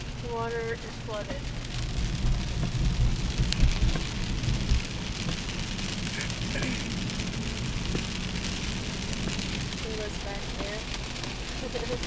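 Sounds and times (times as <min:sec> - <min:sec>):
heavy rain falling: 0:00.0 - 0:12.0
low rumble: 0:00.0 - 0:12.0.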